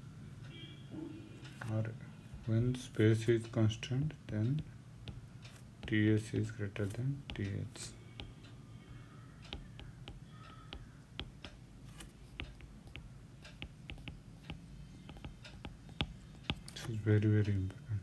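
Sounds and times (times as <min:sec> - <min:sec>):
pen tapping and clicking: 0:04.3 - 0:08.4, 0:09.5 - 0:17.0.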